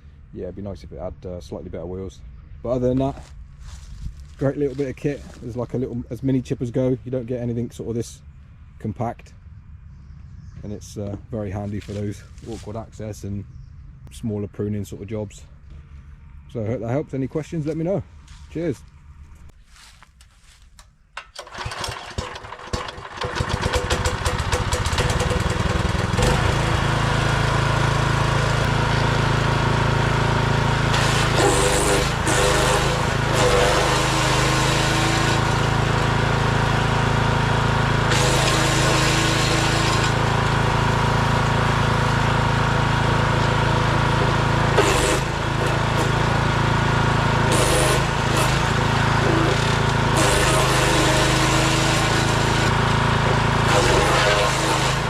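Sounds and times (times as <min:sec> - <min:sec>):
wood chipper engine running: 0:09.4 - 0:14.1, 0:21.2 - 0:55.0.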